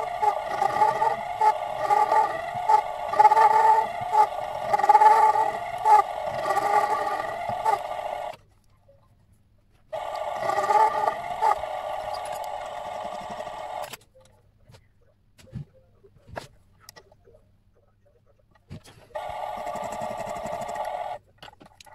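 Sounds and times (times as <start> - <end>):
lathe motor whine: 0.0 - 8.4, 10.0 - 13.9, 19.2 - 21.2.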